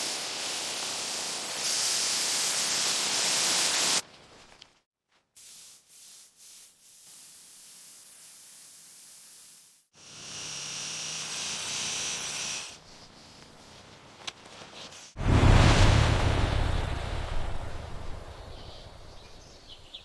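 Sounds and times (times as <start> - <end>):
hiss with high whistling tone: 0.0 - 4.0, 5.4 - 13.7
spraying hiss: 0.0 - 4.0, 5.4 - 13.9.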